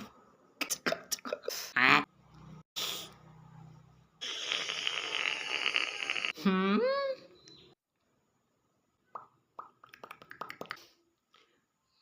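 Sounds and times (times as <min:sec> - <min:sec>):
short vocal hiss: 0:04.2 - 0:06.3
mouth clicks and pops: 0:09.1 - 0:11.0.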